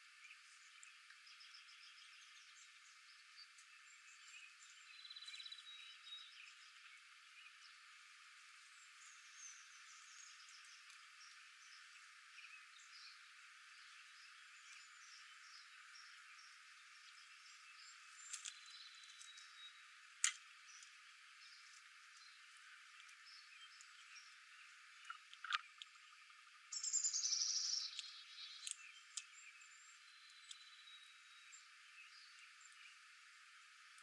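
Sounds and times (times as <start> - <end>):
thin whistled bird notes: 8.7 - 22.4, 23.0 - 33.0
bird chips and clicks: 18.2 - 19.6, 25.0 - 30.9.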